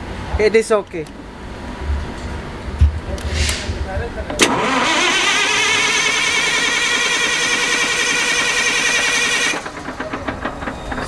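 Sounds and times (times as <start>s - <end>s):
starter motor cranking engine: 3.1s - 11.0s.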